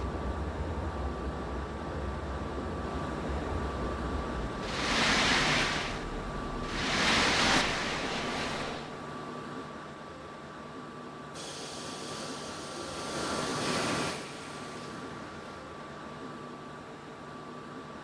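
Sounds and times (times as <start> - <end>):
train rumbling: 0.0 - 9.1
thin steady whine: 0.0 - 18.0
loud hiss bursts: 4.6 - 9.0, 11.4 - 15.1.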